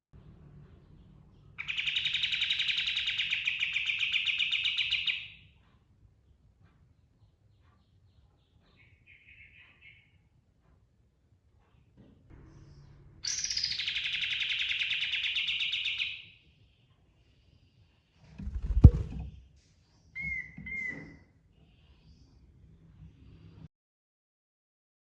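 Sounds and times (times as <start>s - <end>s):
sharp thump: 18.4s - 19.3s.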